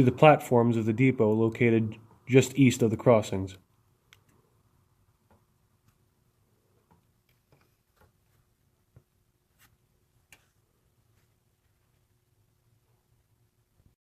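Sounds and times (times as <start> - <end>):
faint irregular clicks: 3.7 - 4.6, 5.2 - 9.2, 10.2 - 10.6.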